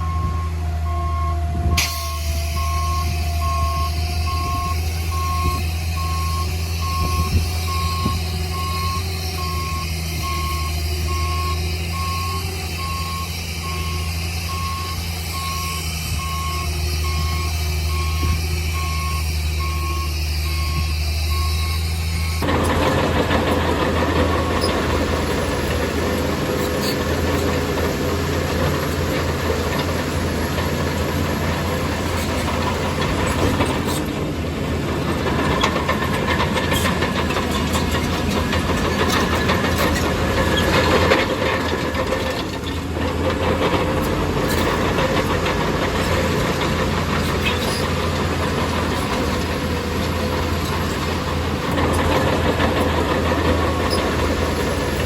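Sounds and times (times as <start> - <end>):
bulldozer diesel engine: 0.0 - 55.0.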